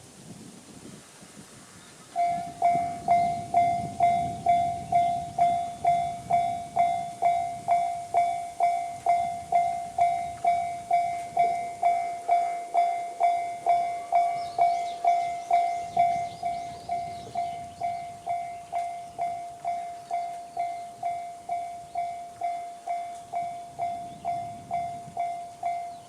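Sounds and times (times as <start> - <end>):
level-crossing alarm bell: 2.2 - 26.0.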